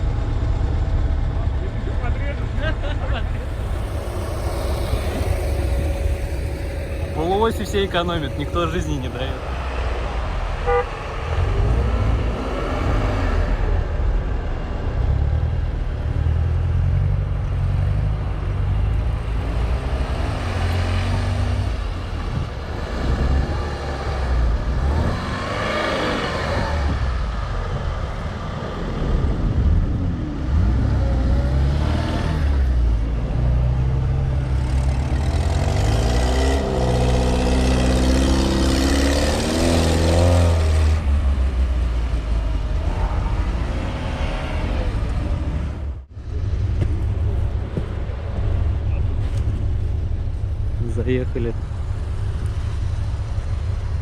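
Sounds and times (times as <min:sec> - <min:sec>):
off-road engines revving: 0:01.6 - 0:09.6, 0:27.9 - 0:46.0.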